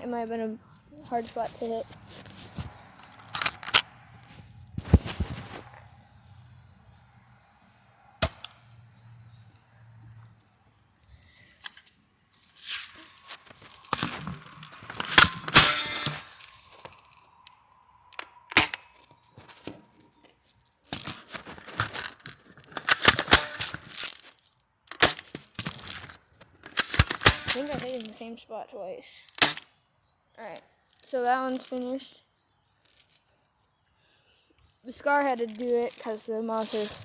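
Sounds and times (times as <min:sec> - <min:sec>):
airsoft gun cracks: 0:14.9 - 0:17.0, 0:18.2 - 0:19.0, 0:26.7 - 0:28.1, 0:29.4 - 0:29.7.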